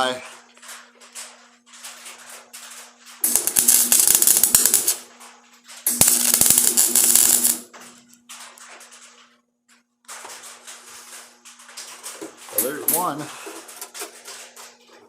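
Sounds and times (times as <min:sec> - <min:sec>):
welding arc crackling: 0:02.6 - 0:08.9, 0:12.5 - 0:13.3.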